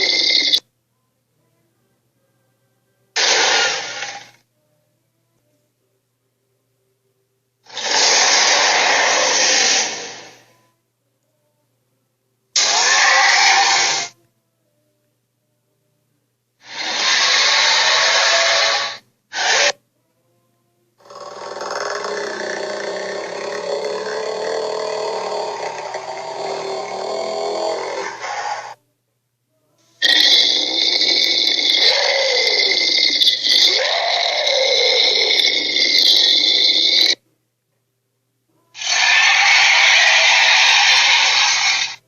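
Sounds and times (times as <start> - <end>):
cartoon dinosaur screeches: 0.0 - 0.6, 3.2 - 4.4, 7.7 - 10.4, 12.6 - 14.2, 16.6 - 19.8, 21.0 - 28.8, 30.0 - 37.2, 38.8 - 42.0.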